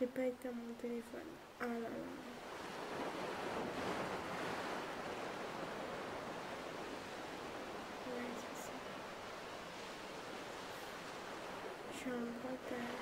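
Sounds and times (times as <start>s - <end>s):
ocean waves washing onto shore: 1.4s - 13.0s.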